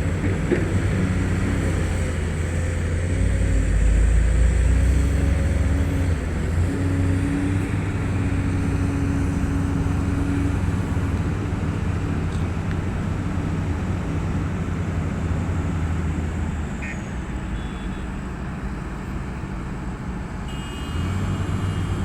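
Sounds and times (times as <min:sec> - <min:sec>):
excavator diesel engine drone: 0:00.0 - 0:22.0.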